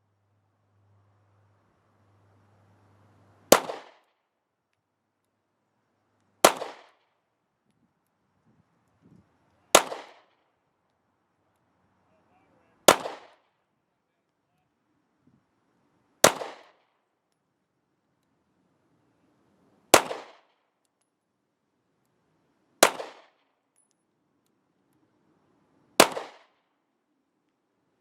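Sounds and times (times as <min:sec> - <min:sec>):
pistol shots with echo: 0:03.5 - 0:04.0, 0:06.4 - 0:07.0, 0:09.7 - 0:10.3, 0:12.9 - 0:13.5, 0:16.2 - 0:16.9, 0:19.9 - 0:20.5, 0:22.8 - 0:23.4, 0:26.0 - 0:26.6.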